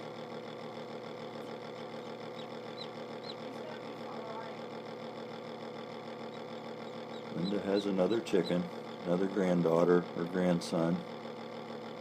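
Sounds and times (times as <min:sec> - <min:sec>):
incubator fan humming: 0:00.0 - 0:12.0
chick peeping: 0:02.0 - 0:03.9, 0:06.3 - 0:08.7.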